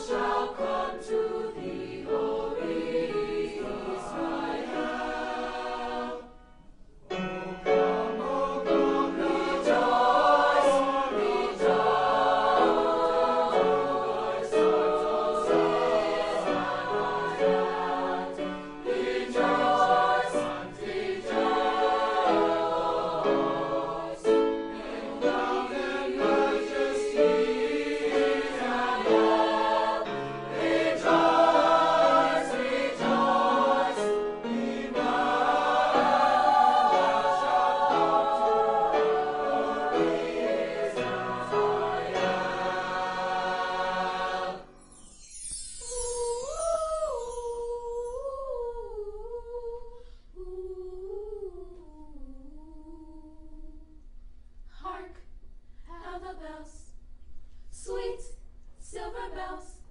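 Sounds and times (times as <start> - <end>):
choir singing in parts: 0.0 - 6.6, 7.4 - 44.8.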